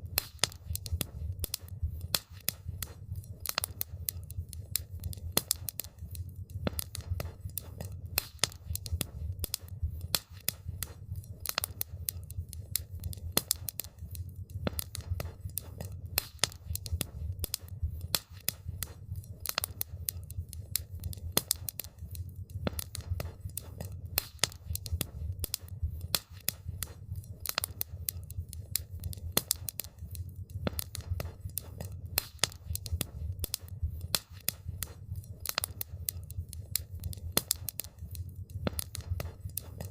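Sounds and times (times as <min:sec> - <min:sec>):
campfire crackling: 0:00.0 - 0:39.9.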